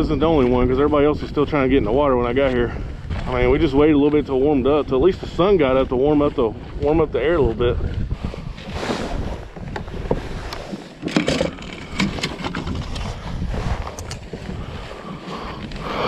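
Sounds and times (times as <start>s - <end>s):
wind buffeting microphone: 0.0s - 16.0s
sharp clicks and knocks: 11.0s - 13.1s.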